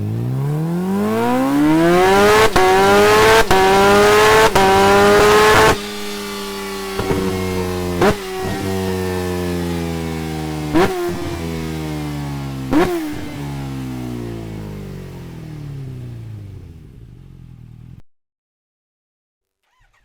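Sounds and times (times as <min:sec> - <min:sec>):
motorcycle engine decelerating: 0:00.0 - 0:18.0
engine exhaust pops: 0:07.0 - 0:08.7.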